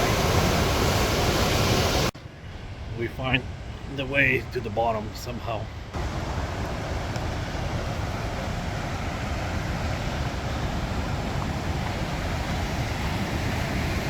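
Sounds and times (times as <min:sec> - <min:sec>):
river water rushing over rocks: 0:00.0 - 0:02.1, 0:06.0 - 0:14.0.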